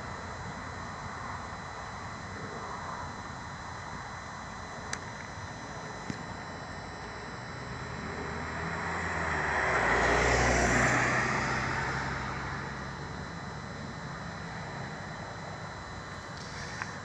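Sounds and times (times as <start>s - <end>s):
vehicle driving past: 7.8s - 13.2s.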